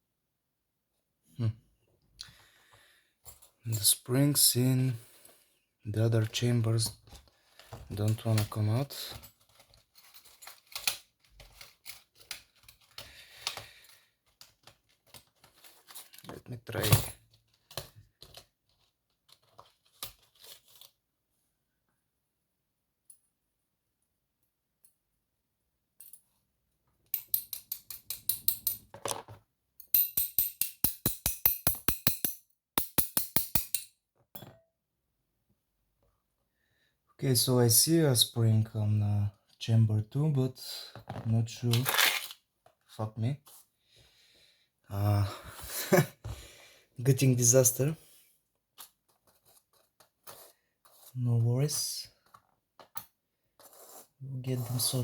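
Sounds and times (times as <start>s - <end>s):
small clicks handling lock tools: 8.0s - 16.3s.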